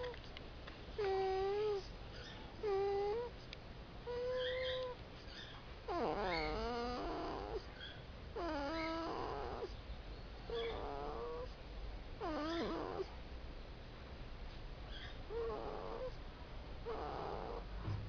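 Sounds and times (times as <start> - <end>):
pet snoring with whistling squeaks: 1.0 - 3.3, 4.1 - 9.8, 10.5 - 11.6, 12.2 - 13.1, 14.9 - 16.2, 16.8 - 17.7.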